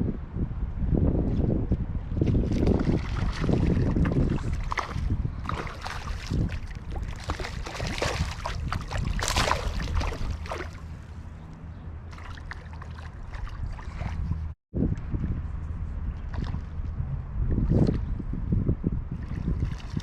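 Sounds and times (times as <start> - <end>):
wind gusting on microphone: 0.0 - 20.0
water splashing: 2.4 - 11.2, 12.1 - 14.5.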